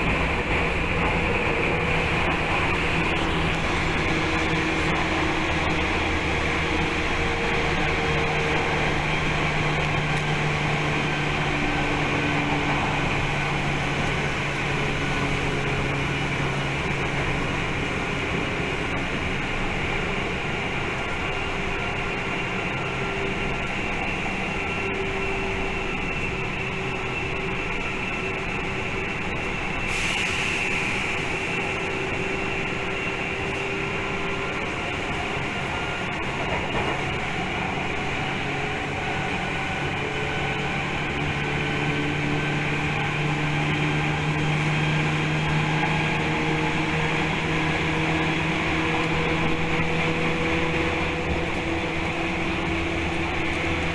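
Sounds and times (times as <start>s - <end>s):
train running rumble: 0.0s - 53.9s
hiss: 29.8s - 31.7s.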